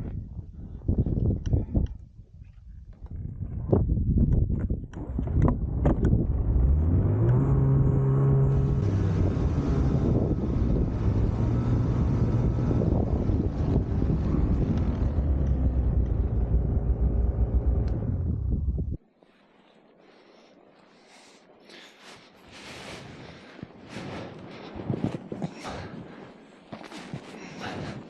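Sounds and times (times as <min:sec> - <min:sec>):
snowmobile engine revving: 0:05.0 - 0:18.5.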